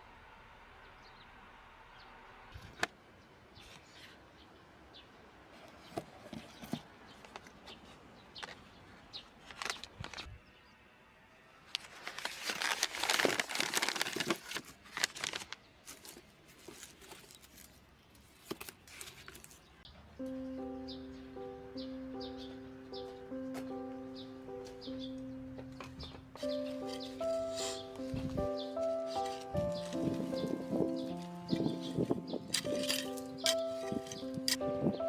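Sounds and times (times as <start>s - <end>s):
rustling and crinkling: 5.5s - 10.4s, 11.7s - 19.9s, 24.6s - 35.0s.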